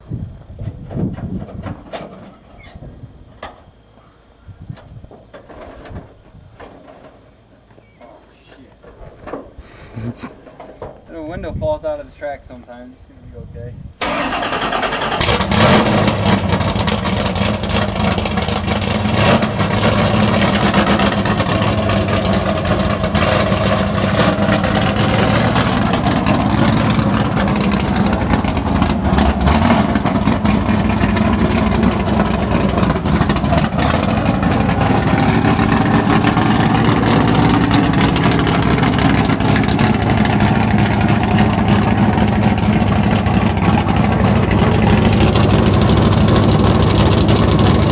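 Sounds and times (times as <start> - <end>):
car engine idling roughly: 14.0 - 47.9.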